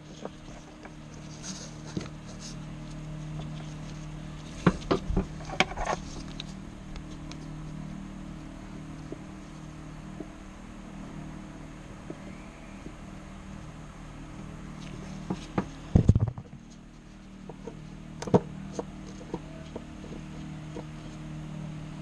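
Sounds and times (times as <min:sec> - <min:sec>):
sharp clicks and knocks: 0:15.3 - 0:16.6.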